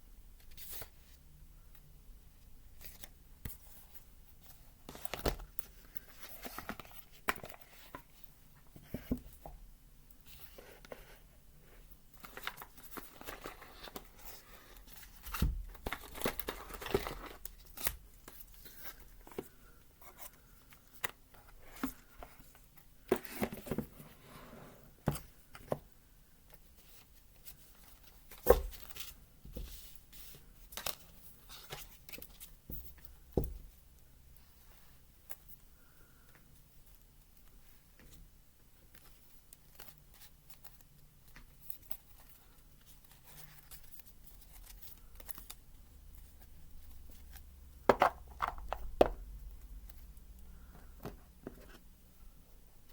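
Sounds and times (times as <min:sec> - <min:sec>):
paper and card rustling: 0:12.2 - 0:24.0.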